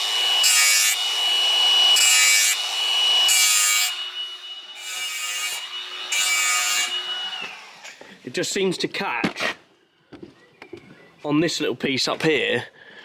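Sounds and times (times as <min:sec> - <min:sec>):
power tool whining: 0:00.0 - 0:08.2.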